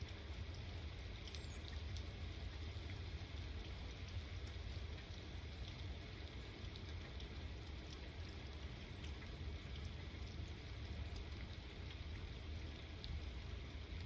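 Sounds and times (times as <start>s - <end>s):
faint drip ticks: 0.0s - 14.0s
steady rain: 0.0s - 14.0s.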